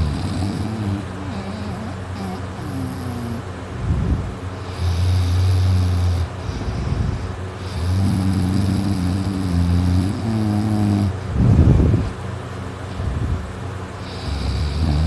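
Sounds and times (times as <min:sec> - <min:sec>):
person snoring: 0:00.0 - 0:03.4, 0:04.7 - 0:11.1, 0:14.0 - 0:15.0.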